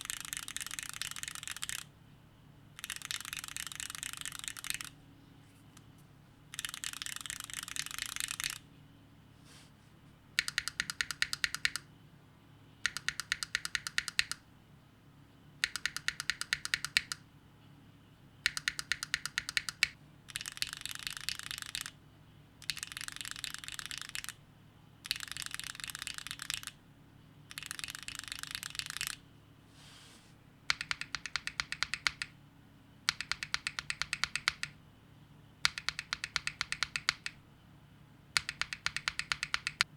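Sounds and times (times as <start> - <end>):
mechanical keyboard typing: 0.0 - 1.9, 2.8 - 5.0, 6.5 - 8.6, 10.4 - 11.8, 12.8 - 14.4, 15.6 - 17.2, 18.5 - 22.0, 22.6 - 24.4, 25.0 - 26.8, 27.5 - 29.2, 30.7 - 32.3, 33.1 - 34.8, 35.6 - 37.4, 38.4 - 39.9.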